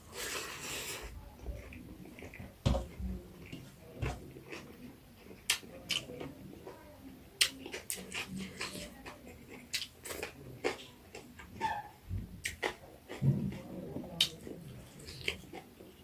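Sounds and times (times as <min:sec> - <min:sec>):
chewing with mouth clicks: 0:03.4 - 0:06.2, 0:07.4 - 0:11.6, 0:12.4 - 0:13.6, 0:14.2 - 0:16.0.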